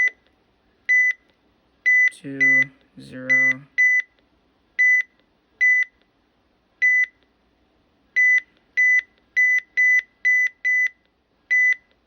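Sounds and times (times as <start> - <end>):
short high key-press beeps: 8.2 - 11.9.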